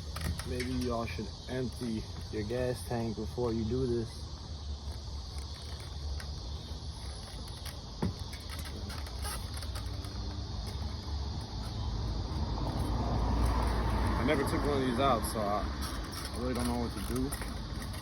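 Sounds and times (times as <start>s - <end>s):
insects hissing: 0.0s - 18.0s.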